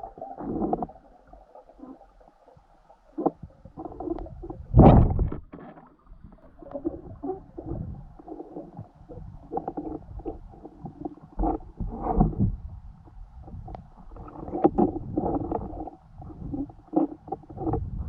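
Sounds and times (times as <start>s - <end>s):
underwater gurgles and knocks: 0.0s - 18.0s
underwater surge: 3.8s - 12.7s.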